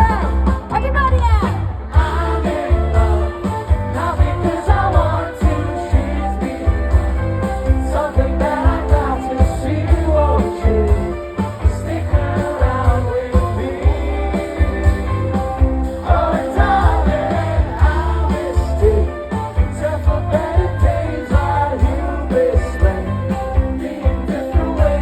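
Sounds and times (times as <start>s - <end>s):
live rock band playing: 0.0s - 25.0s.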